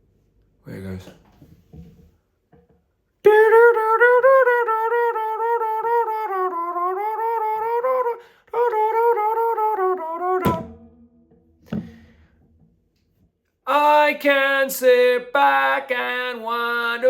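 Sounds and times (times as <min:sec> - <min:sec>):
man humming a melody: 0:03.2 - 0:10.8
sharp knock: 0:10.4 - 0:12.1.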